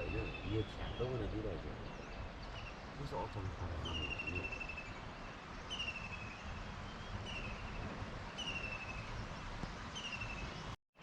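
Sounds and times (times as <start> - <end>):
bird whistling: 3.8 - 5.0, 8.4 - 9.2.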